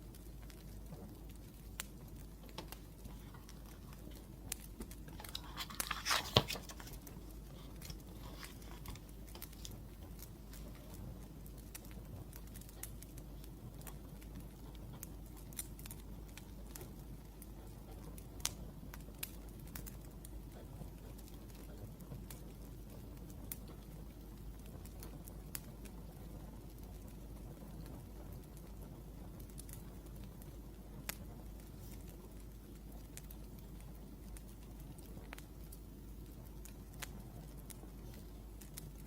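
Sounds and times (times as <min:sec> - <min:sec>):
low steady hiss: 0:00.0 - 0:39.0
wood fire crackling: 0:00.0 - 0:39.0.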